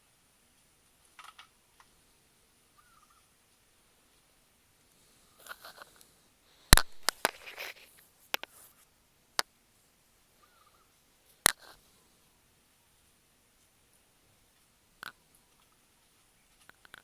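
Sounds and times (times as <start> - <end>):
faint scraping: 5.0 - 8.9.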